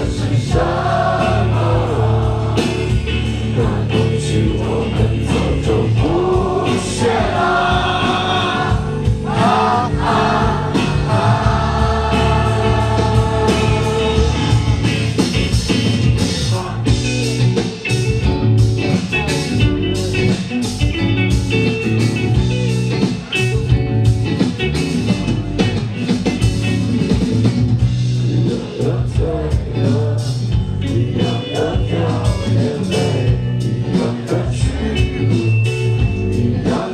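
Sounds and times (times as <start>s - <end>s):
rock band playing live: 0.0s - 36.9s
person singing: 3.5s - 14.7s, 28.3s - 36.9s.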